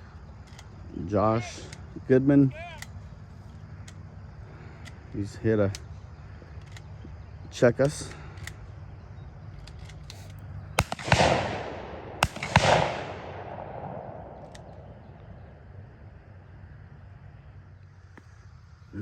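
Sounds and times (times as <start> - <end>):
shotgun shots: 10.8 - 15.6.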